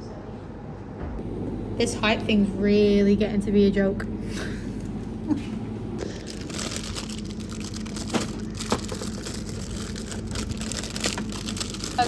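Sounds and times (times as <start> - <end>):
steady low hum: 0.0 - 12.0
plastic wrappers crinkling: 6.0 - 12.0.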